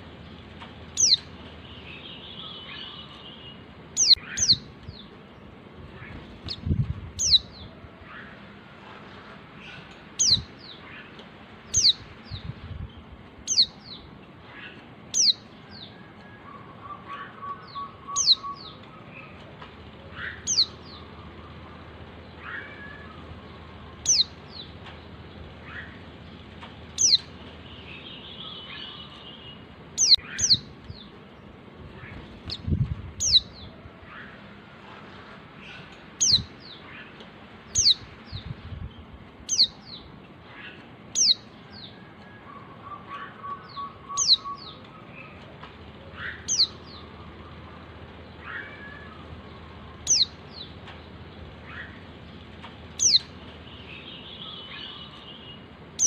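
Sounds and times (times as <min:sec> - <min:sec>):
other birds chirping: 0:00.0 - 0:56.0
bird high falling calls: 0:00.9 - 0:04.7, 0:13.5 - 0:24.9, 0:26.9 - 0:30.7, 0:39.5 - 0:56.0.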